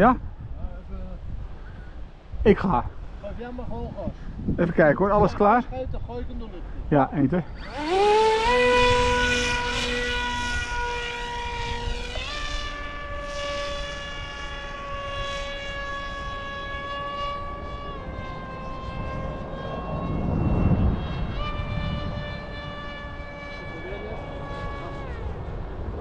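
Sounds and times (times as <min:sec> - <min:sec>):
wind rumble on microphone: 0:00.0 - 0:26.0
model plane electric motor whine: 0:07.2 - 0:26.0.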